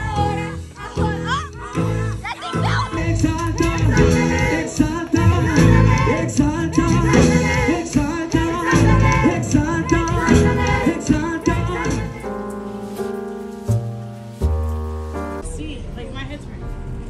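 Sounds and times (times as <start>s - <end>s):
band with heavy bass: 0.0s - 12.2s
voices singing worship music: 0.0s - 13.4s
held chords: 1.1s - 17.0s.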